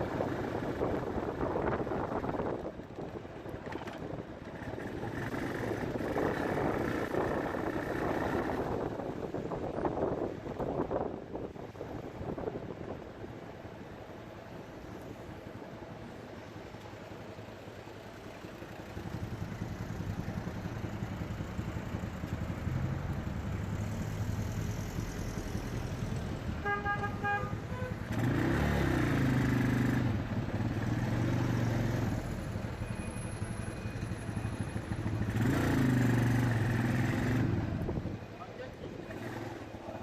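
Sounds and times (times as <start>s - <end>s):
motorcycle engine revving: 27.8s - 32.4s, 34.7s - 37.9s.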